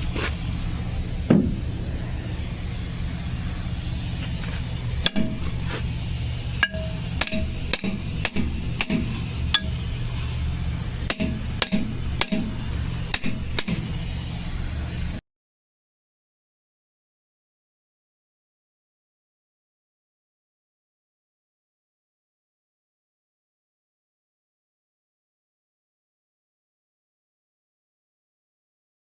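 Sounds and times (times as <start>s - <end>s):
sharp brake knocks: 1.3s - 1.6s.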